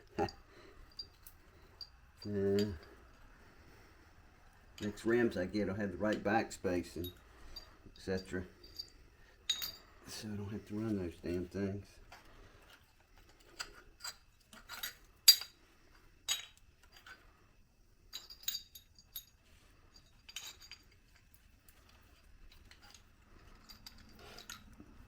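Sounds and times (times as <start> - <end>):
metallic tool clinks: 0.2 - 3.0, 6.9 - 10.0, 13.5 - 15.6, 16.3 - 17.2, 18.1 - 21.0, 22.6 - 24.8.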